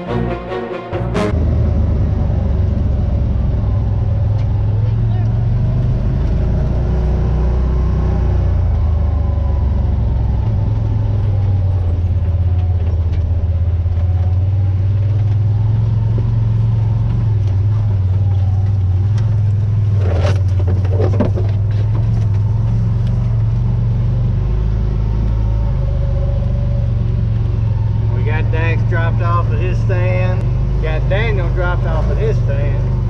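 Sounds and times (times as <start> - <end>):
short high-pitched sound: 0.0 - 1.4
off-road vehicle engine running: 1.3 - 33.0.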